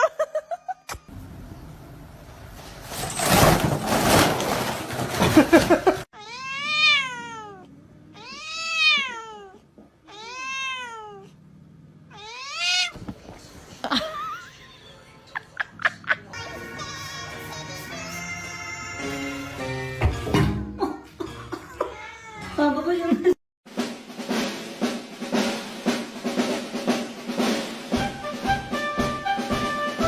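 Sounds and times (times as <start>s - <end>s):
cat meowing: 6.2s - 11.4s, 12.1s - 13.0s, 21.9s - 22.6s.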